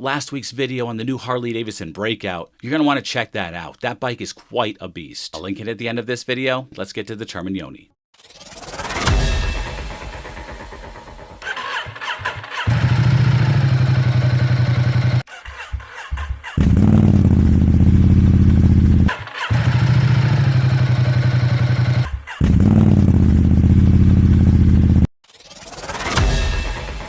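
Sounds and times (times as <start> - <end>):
motorcycle starting and idling: 10.2 - 25.1
motorcycle revving: 11.4 - 25.1.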